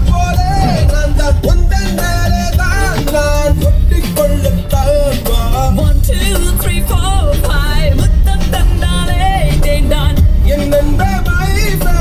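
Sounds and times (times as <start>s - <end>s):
heavy bass: 0.0s - 12.0s
song with sung melody: 0.0s - 12.0s.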